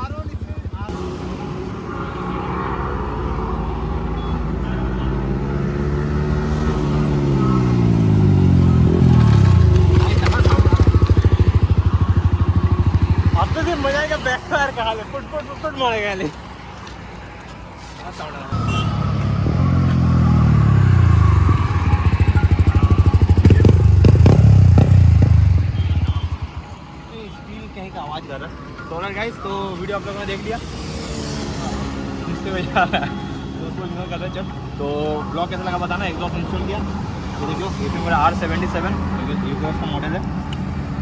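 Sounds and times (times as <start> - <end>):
motorcycle engine running: 0.0 - 2.9, 6.8 - 14.4, 18.5 - 26.8.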